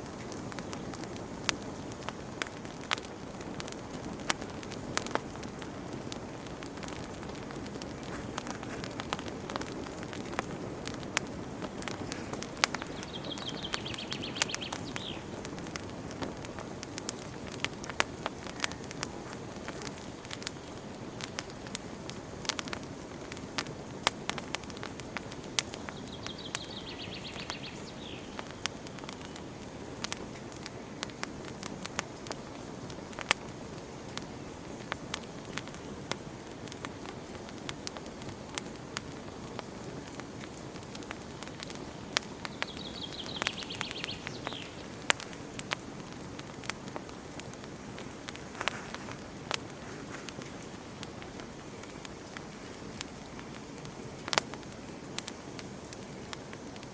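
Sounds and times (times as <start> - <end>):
campfire crackling: 0.0 - 56.9
bird trilling: 12.8 - 15.4.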